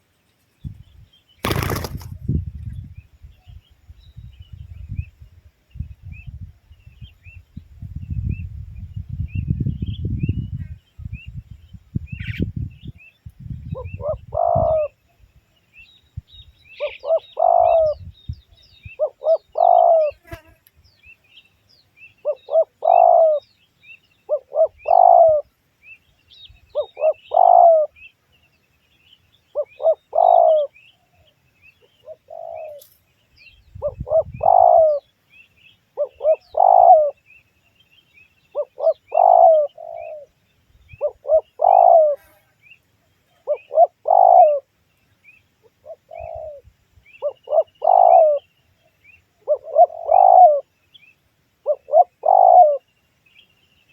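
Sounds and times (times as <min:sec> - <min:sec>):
small birds chirping faintly: 0:00.0 - 0:53.9
dove cooing: 0:13.7 - 0:15.0, 0:16.8 - 0:18.0, 0:18.9 - 0:20.2, 0:22.2 - 0:23.4, 0:24.3 - 0:25.5, 0:26.7 - 0:28.0, 0:29.5 - 0:31.2, 0:32.0 - 0:32.8, 0:33.8 - 0:35.1, 0:36.0 - 0:37.2, 0:38.5 - 0:40.3, 0:41.0 - 0:42.3, 0:43.4 - 0:44.7, 0:45.6 - 0:48.5, 0:49.4 - 0:50.7, 0:51.6 - 0:52.9.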